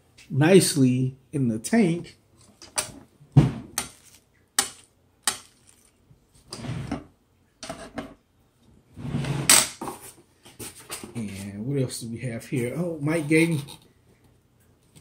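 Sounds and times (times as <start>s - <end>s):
packaging rustling: 3.8s - 6.0s.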